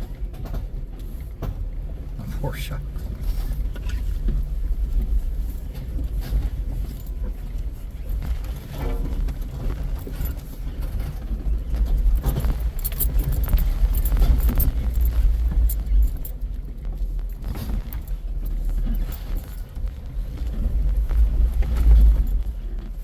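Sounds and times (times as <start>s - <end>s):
engine running low: 0.0s - 23.0s
rattling and clicking: 5.0s - 23.0s.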